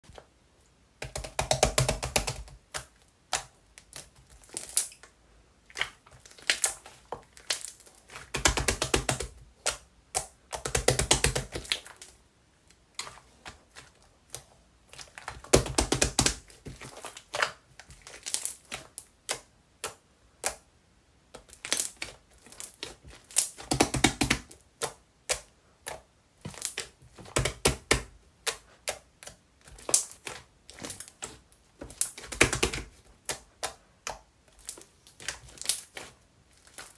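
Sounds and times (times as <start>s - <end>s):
slime crackling as kneaded by hand: 0.9s - 36.9s.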